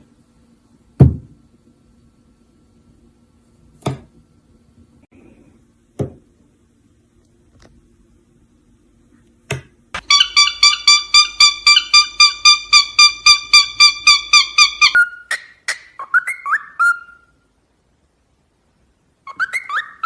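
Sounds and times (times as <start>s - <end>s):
parrot whistling: 10.0s - 17.4s, 19.2s - 20.0s.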